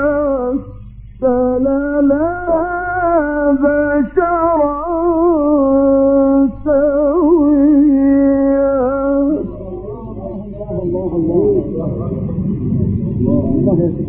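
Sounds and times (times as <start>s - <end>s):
low hum: 0.0s - 14.0s
man chanting melodically: 0.0s - 14.0s
several people speaking: 9.5s - 14.0s.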